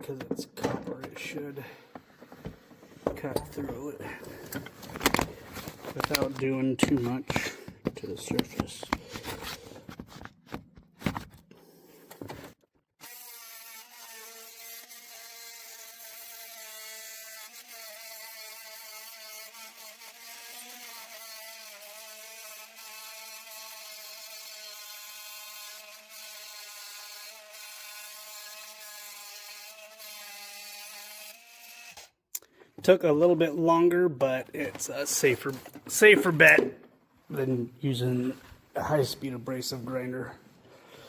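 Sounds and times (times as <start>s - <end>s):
saw cutting through copper: 13.0s - 32.2s.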